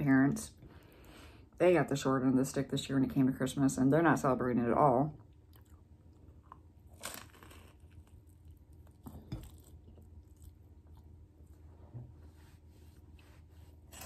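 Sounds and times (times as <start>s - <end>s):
person chewing food: 5.2s - 11.8s
crunchy bites: 6.4s - 10.5s.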